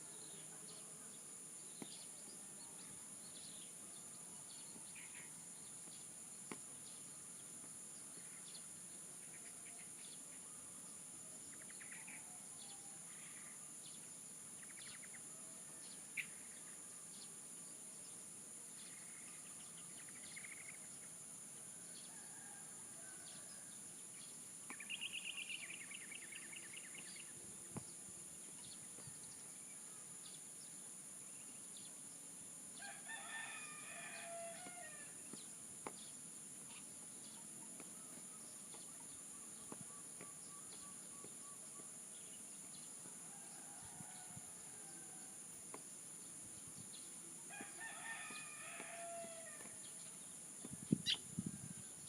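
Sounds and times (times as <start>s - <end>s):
bird chirps: 51.0s - 51.2s.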